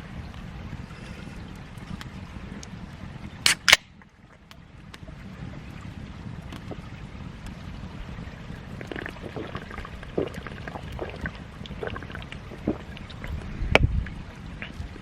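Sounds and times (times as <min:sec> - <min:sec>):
wind rumble on microphone: 0:00.0 - 0:15.0
liquid pouring with glugs: 0:08.6 - 0:14.8.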